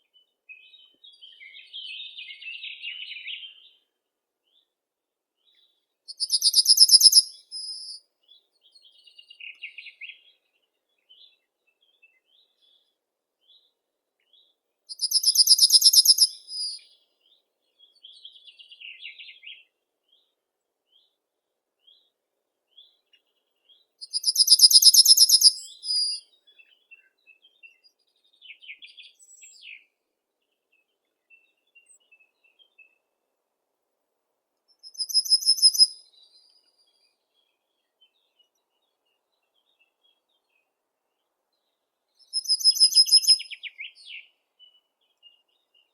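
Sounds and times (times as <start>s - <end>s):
birds chirping faintly: 5.4s - 33.3s, 34.7s - 45.9s
bird high fast trill: 6.2s - 7.9s, 15.0s - 16.3s, 24.2s - 26.1s, 35.0s - 35.9s.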